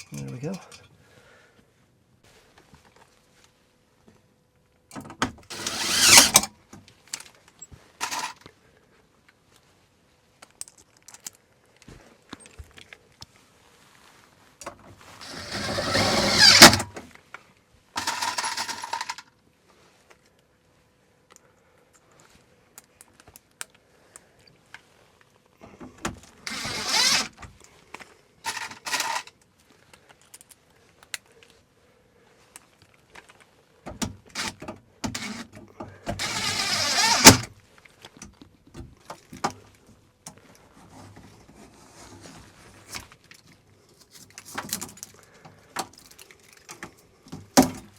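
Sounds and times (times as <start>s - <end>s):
scraping and rattling on metal box: 8.0s - 8.4s, 15.2s - 17.0s, 18.0s - 19.2s, 28.5s - 29.3s.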